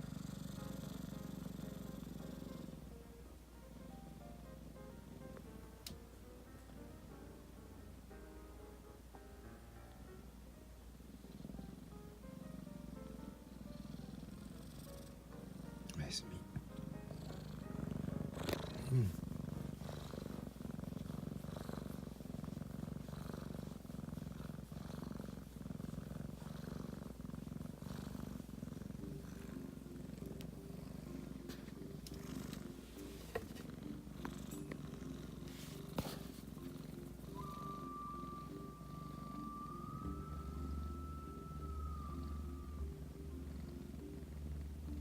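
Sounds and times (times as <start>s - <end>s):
cat purring: 0.0s - 45.0s
high whistle-like tone: 37.4s - 43.0s.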